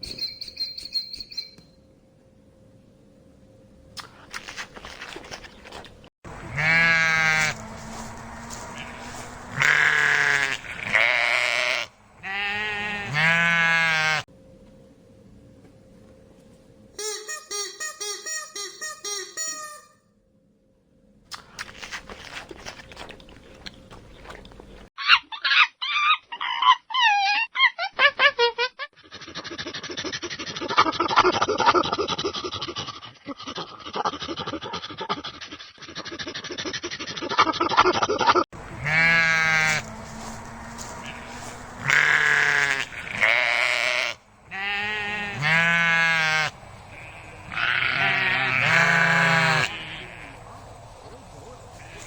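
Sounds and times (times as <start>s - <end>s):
crackly crunching and clicking: 4.0s - 6.1s, 21.3s - 24.9s
ringing animal calls: 6.3s - 14.2s, 38.6s - 50.5s.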